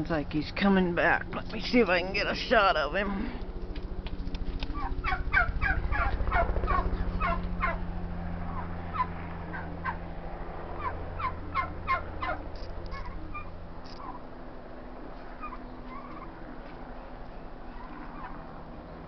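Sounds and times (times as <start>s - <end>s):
helicopter rotor thrum: 0.0s - 19.0s.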